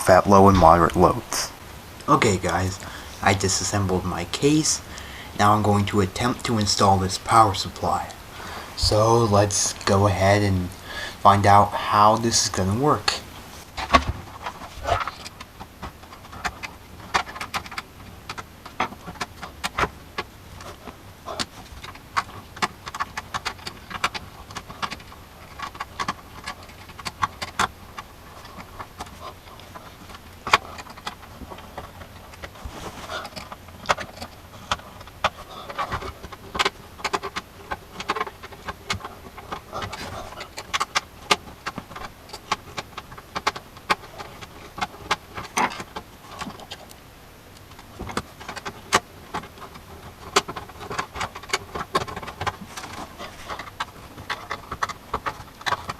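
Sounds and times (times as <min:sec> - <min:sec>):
clicks and knocks of computer parts: 0:13.8 - 0:55.9.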